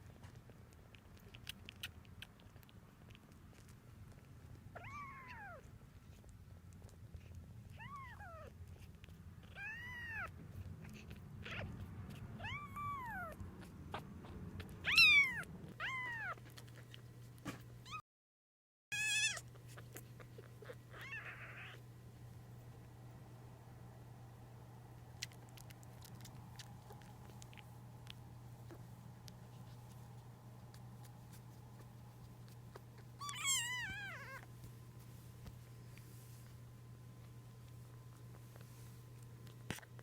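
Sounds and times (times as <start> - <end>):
kitten meowing: 4.8 - 5.6, 7.7 - 8.5, 9.5 - 10.3, 12.4 - 14.0, 14.6 - 16.4, 18.9 - 19.4, 20.6 - 21.8, 33.2 - 34.5.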